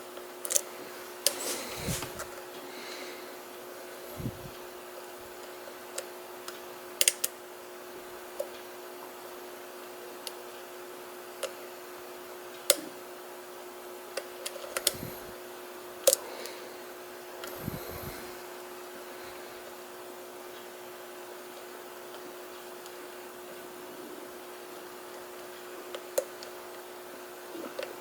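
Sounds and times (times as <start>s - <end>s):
steady hum: 0.6s - 5.8s, 14.8s - 15.4s, 16.2s - 19.8s.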